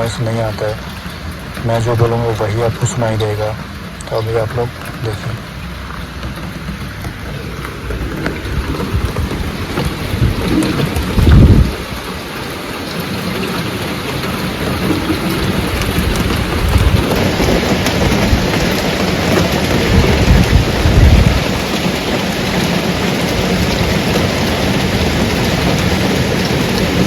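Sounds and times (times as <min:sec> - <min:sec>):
low rumbling: 0:00.0 - 0:12.4, 0:14.5 - 0:21.4
heavy rain pouring: 0:00.0 - 0:27.0.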